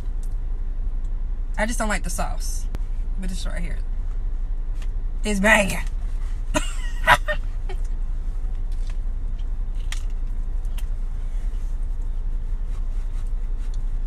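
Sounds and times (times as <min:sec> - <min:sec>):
car engine rumbling: 0:00.0 - 0:14.0.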